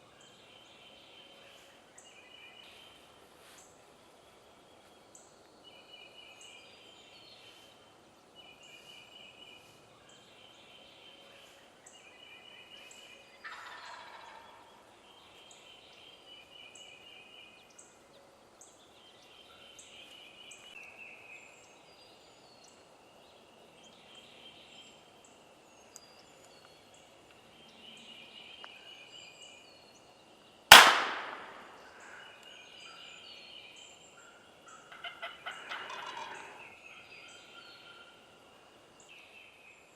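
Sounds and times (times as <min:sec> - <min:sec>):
songbirds chirping: 0:00.0 - 0:39.9
turkeys gobbling: 0:13.4 - 0:14.7, 0:34.7 - 0:36.7
shotgun shot echoing: 0:30.7 - 0:32.2.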